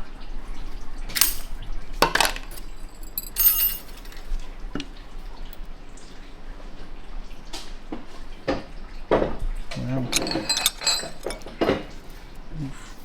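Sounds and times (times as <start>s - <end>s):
metal parts knocking and clinking: 1.1s - 4.9s, 10.0s - 11.9s.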